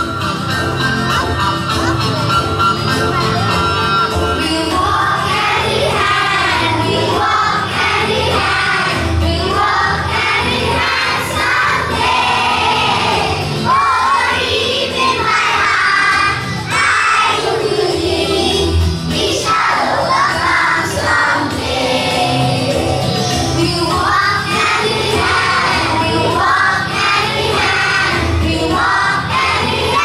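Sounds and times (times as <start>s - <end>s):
children singing a song: 3.3s - 30.0s.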